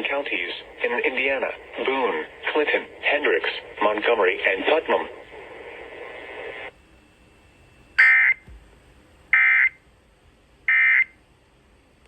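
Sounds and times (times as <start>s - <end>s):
radio hiss: 0.0s - 6.8s.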